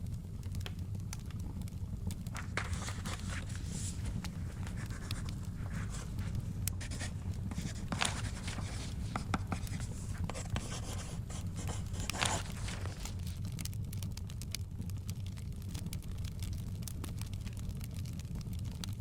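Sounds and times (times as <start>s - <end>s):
low steady rumble: 0.0s - 17.7s
fire crackling: 0.0s - 19.0s
pen scratching on paper: 6.8s - 12.7s.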